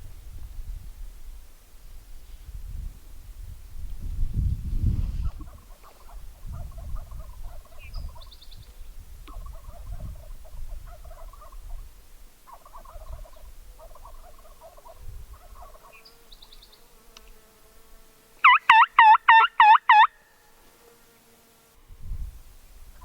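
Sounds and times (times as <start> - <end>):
turkey yelps: 18.4 - 20.2.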